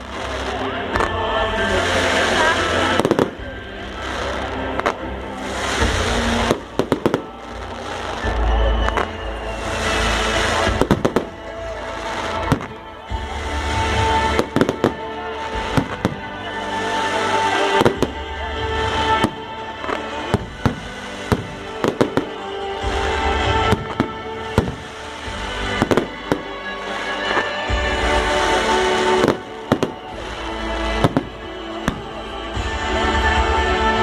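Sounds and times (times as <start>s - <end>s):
fireworks bangs and crackles: 0.0s - 34.0s
music with held notes: 0.0s - 34.0s.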